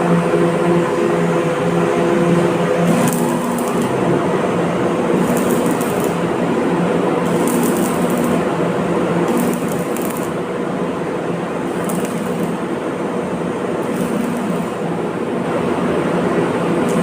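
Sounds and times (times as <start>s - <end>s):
welding machine hum: 2.2s - 17.0s
welding arc crackling hiss: 2.9s - 4.1s, 5.1s - 6.4s, 7.2s - 10.4s, 11.6s - 12.9s, 13.8s - 15.2s.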